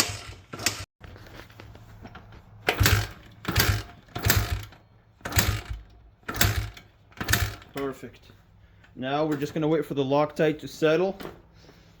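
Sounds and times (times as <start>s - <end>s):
engine kick-start cranking: 2.6s - 7.9s.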